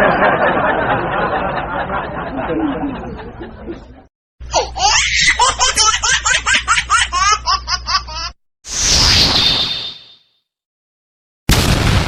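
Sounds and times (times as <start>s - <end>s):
muffled laughing: 0.0s - 4.1s
high-pitched laugh: 0.0s - 8.4s.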